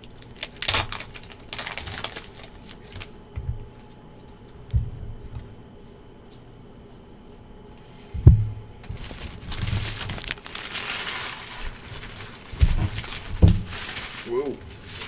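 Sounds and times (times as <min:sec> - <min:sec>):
foil wrappers crinkling and tearing: 0:00.0 - 0:03.2, 0:08.8 - 0:15.0
thump on table: 0:08.2 - 0:08.6.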